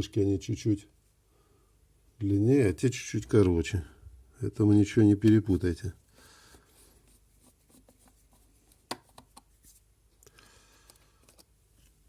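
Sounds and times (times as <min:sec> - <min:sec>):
small plastic parts clicking: 0:10.2 - 0:12.0.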